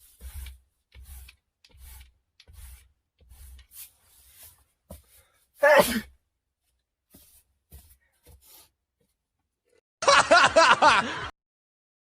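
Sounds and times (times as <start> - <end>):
person laughing: 10.0 - 11.3.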